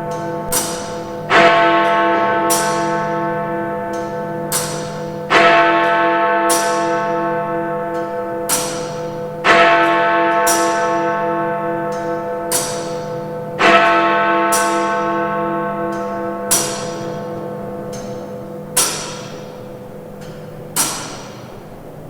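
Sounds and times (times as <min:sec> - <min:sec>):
great bell striking: 0:00.0 - 0:21.4.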